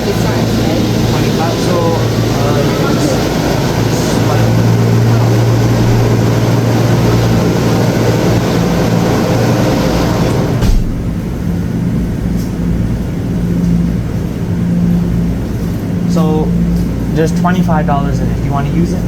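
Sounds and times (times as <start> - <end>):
faint hum: 0.0 - 19.0
loud rumbling with low hum: 0.0 - 19.0.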